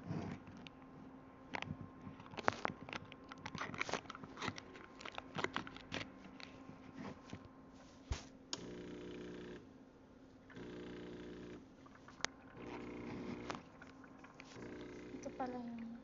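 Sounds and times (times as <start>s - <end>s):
handling clicks and crinkling: 0.3s - 7.6s
espresso machine pump buzzing: 8.6s - 9.7s, 10.5s - 11.7s, 12.5s - 13.8s, 14.5s - 15.6s.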